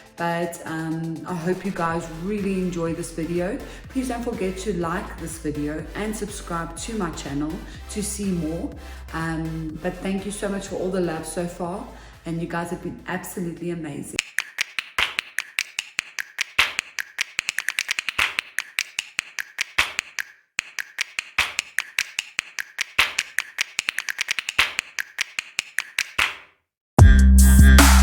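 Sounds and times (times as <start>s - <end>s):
electronic music with heavy bass: 0.0s - 13.1s, 27.0s - 28.0s
sharp clicks: 14.2s - 26.5s.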